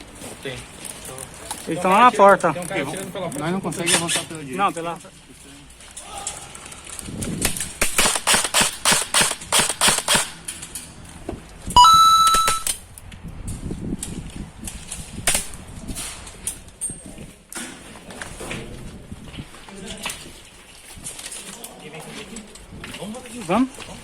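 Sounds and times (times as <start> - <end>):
airsoft guns firing: 7.4 - 10.4
loud high tone rising: 11.8 - 12.7.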